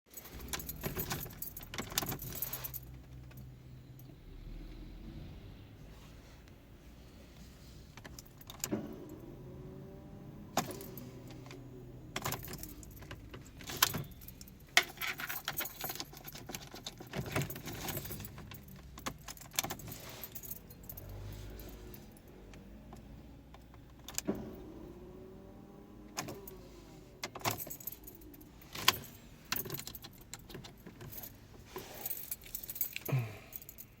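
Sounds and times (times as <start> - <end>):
keys jangling on a keyring: 0.1 - 3.6, 10.6 - 22.3, 27.2 - 34.0.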